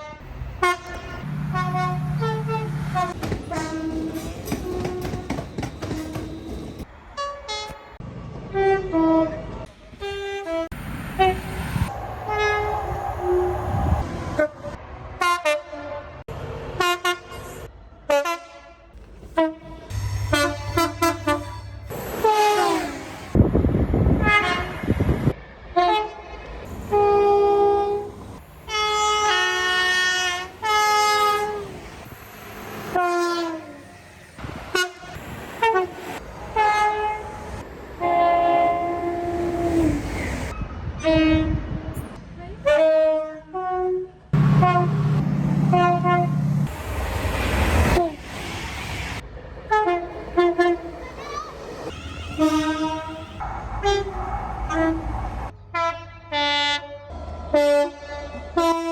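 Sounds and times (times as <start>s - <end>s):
two-tone train horn blasts: 0.0s - 6.6s, 8.5s - 11.4s, 16.8s - 23.4s, 24.2s - 25.0s, 26.9s - 31.8s, 32.9s - 33.8s, 34.7s - 40.0s, 41.0s - 41.9s, 42.6s - 46.7s, 52.4s - 58.9s
train running noise: 0.0s - 15.7s, 19.0s - 55.6s.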